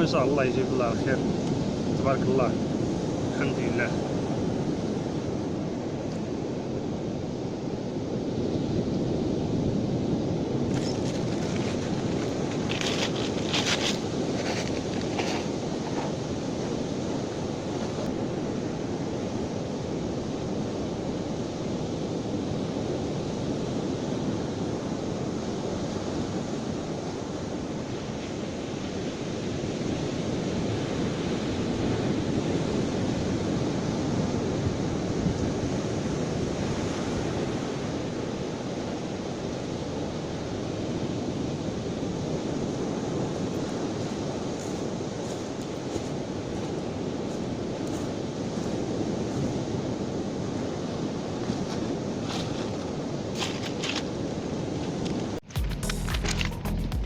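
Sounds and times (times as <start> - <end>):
wind buffeting microphone: 0.0 - 55.5
sea surf rushing on shore: 0.0 - 55.7.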